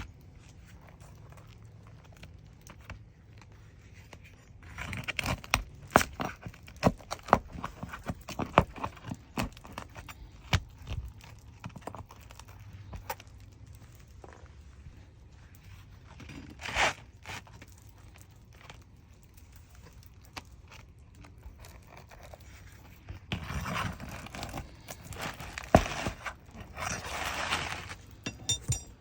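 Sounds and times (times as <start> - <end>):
pry bar scraping shingle: 3.7 - 14.5, 16.1 - 18.9, 19.7 - 29.0.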